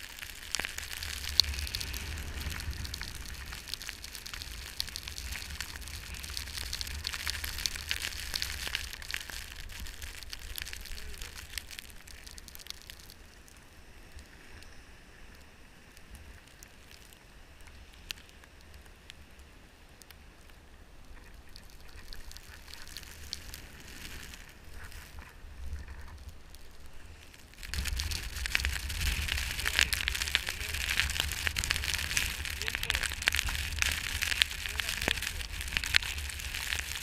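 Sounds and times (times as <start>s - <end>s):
wind rumble on microphone: 0.0s - 12.7s, 20.4s - 37.0s
crackly hiss of snow: 0.0s - 37.0s.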